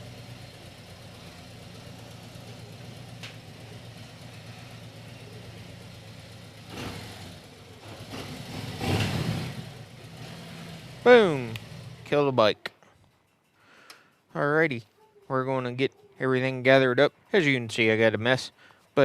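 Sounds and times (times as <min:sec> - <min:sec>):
motorcycle engine idling: 0:00.0 - 0:19.0.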